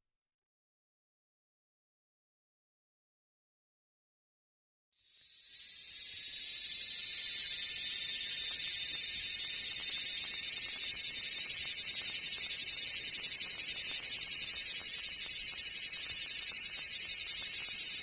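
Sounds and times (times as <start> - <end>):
cicada buzzing: 5.1 - 18.0.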